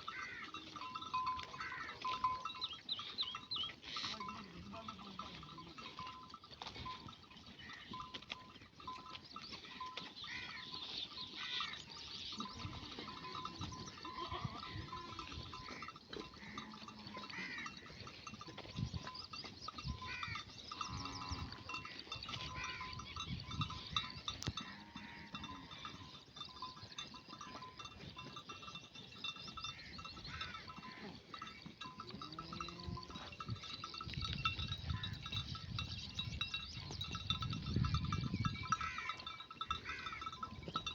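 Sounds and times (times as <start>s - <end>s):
sheep bleating: 0.0s - 2.2s, 12.6s - 18.1s, 24.0s - 26.1s, 29.7s - 33.4s.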